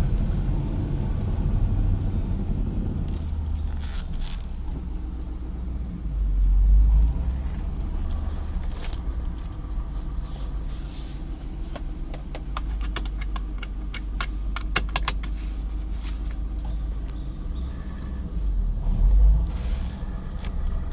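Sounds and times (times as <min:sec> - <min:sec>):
engine idling roughly: 0:00.0 - 0:20.9
sharp clicks and ticks: 0:12.1 - 0:15.4.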